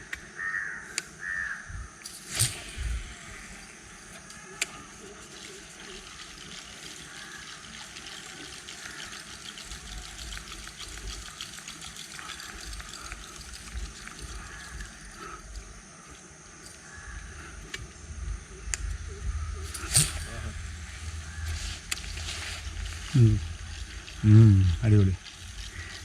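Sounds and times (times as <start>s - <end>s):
stream water trickling: 4.8s - 15.7s, 19.8s - 26.0s.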